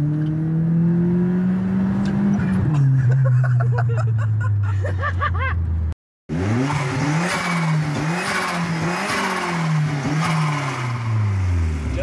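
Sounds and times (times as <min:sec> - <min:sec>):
car engine running: 0:01.9 - 0:12.0.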